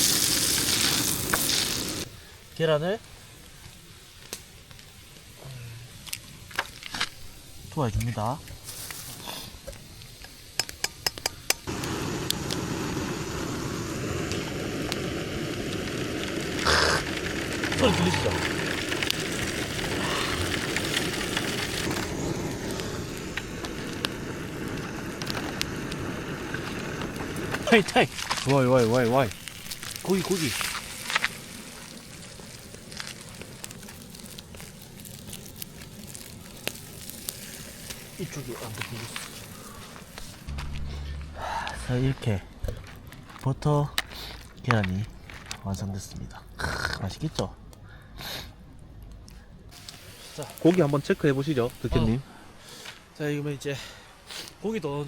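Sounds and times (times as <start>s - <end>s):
eggs sizzling in butter: 0.0s - 2.1s, 8.6s - 40.5s, 49.7s - 52.8s
wood fire crackling: 0.0s - 55.0s.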